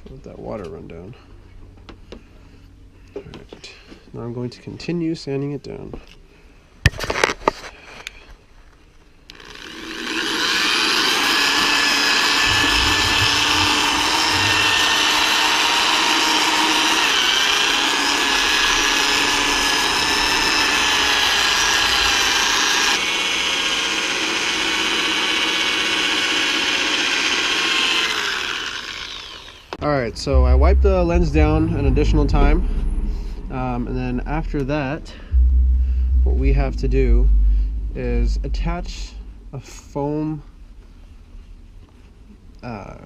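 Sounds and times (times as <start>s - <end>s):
power drill whining: 9.3s - 29.8s.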